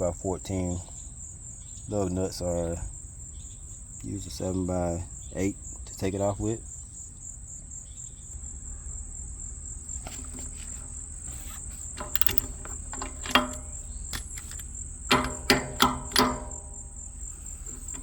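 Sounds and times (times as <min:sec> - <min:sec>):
insects chirring: 0:00.0 - 0:18.0
metal clinks of socket wrench: 0:12.0 - 0:18.0.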